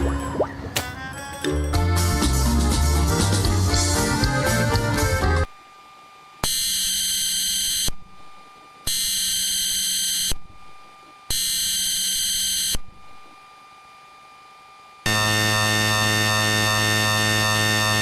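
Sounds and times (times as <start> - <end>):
buzzing digital data tones: 8.9 - 10.4, 11.3 - 12.8.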